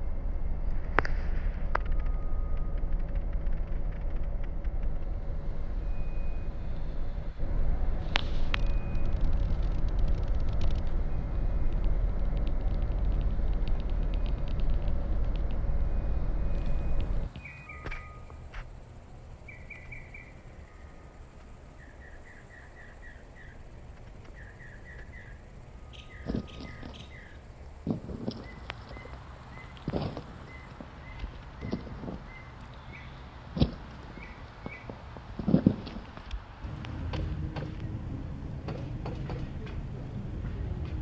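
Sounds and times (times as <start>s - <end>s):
low rumble: 0.0s - 41.0s
faint thin tones: 16.6s - 36.3s
sharp clicks: 16.6s - 36.4s.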